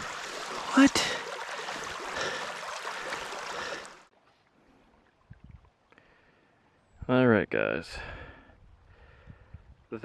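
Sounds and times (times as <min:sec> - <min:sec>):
creek water running: 0:00.0 - 0:06.6.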